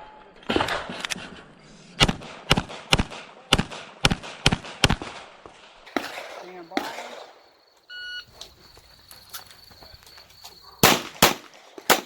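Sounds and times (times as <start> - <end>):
pistol shots: 2.0 - 7.5, 10.8 - 12.0
ringing after shots: 5.9 - 7.7.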